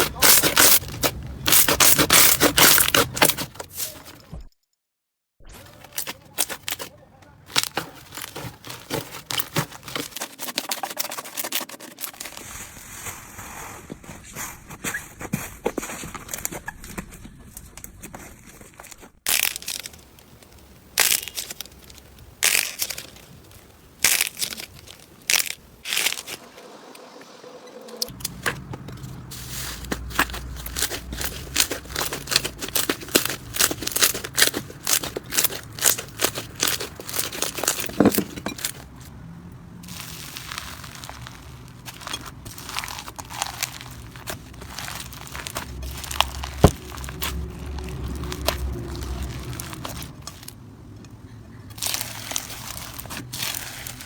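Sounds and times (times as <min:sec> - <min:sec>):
slime crackling and popping: 0:00.0 - 0:03.4, 0:19.3 - 0:26.4, 0:29.4 - 0:38.1, 0:39.8 - 0:50.6, 0:51.7 - 0:54.0.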